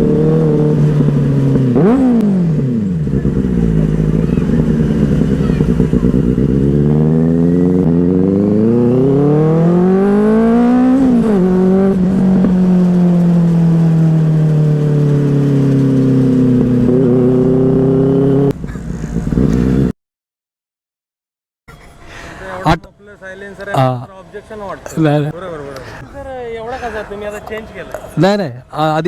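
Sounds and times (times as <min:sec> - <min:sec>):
motorcycle engine revving: 0:00.0 - 0:20.0.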